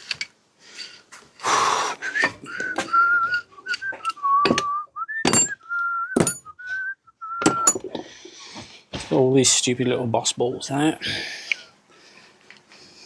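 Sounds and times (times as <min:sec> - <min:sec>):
man whistling a tune: 0:02.0 - 0:07.8
sharp clicks and knocks: 0:02.6 - 0:05.6, 0:06.2 - 0:06.5, 0:07.4 - 0:08.1.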